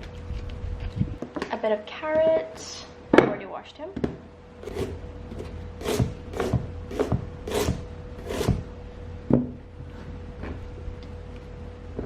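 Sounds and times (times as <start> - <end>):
rasping strokes on carrot: 4.6 - 8.6.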